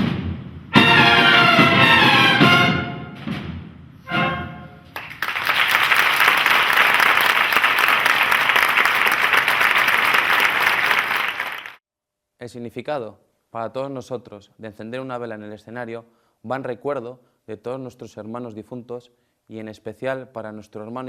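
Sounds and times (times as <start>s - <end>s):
brass and drum band: 0.0s - 5.2s
audience applauding: 4.9s - 11.8s.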